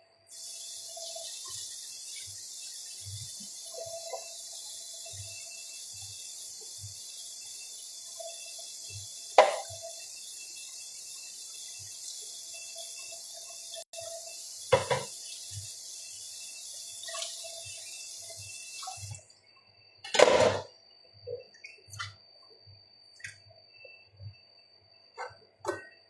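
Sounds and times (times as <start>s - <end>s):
kitchen tap running: 0.3s - 19.3s
splash or clatter at sink: 8.9s - 10.0s, 14.7s - 15.6s, 17.0s - 17.7s.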